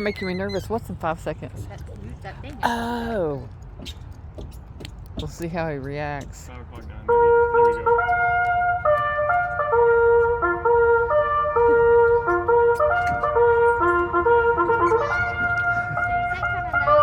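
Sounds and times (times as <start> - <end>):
trumpet melody: 7.0 - 17.0.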